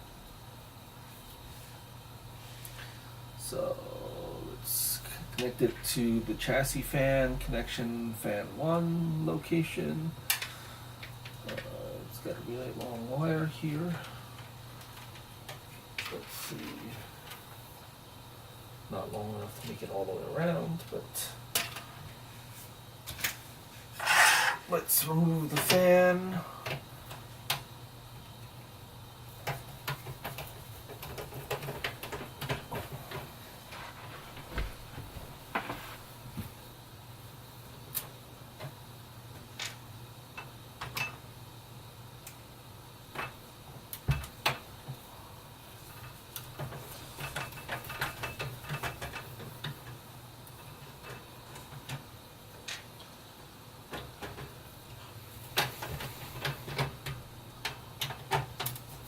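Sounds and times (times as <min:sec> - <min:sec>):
steady low hum: 0:00.0 - 0:59.0
fan being unscrewed clicks and taps: 0:29.4 - 0:34.3, 0:45.9 - 0:53.1, 0:53.9 - 0:54.6, 0:55.5 - 0:58.9.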